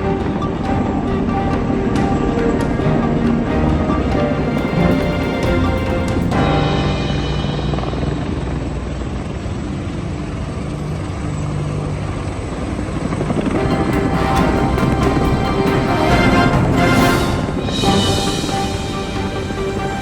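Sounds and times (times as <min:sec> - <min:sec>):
music playing: 0:00.0 - 0:09.2, 0:13.5 - 0:20.0
helicopter rotor beat: 0:04.6 - 0:20.0.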